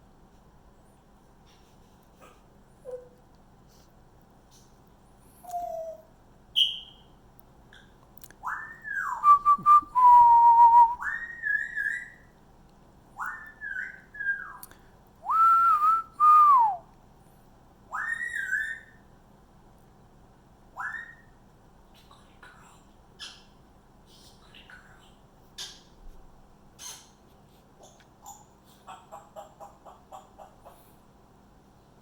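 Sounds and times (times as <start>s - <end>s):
dog whining: 2.8s - 3.2s.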